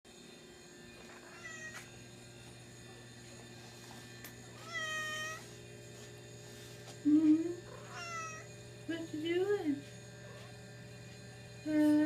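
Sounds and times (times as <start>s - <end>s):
cat meowing: 1.2s - 1.8s, 4.6s - 5.4s, 7.8s - 8.5s.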